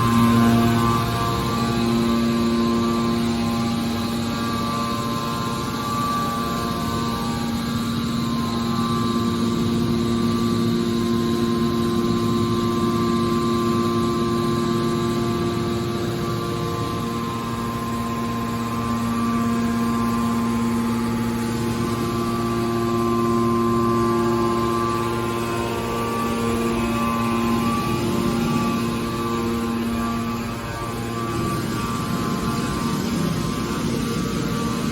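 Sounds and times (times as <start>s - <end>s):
hydraulic machine hum: 0.0s - 34.9s.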